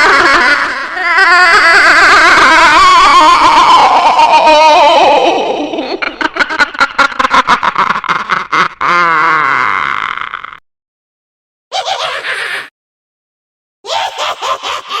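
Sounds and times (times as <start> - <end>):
witch cackling laugh: 1.6 - 10.5, 11.7 - 12.7, 13.9 - 15.0.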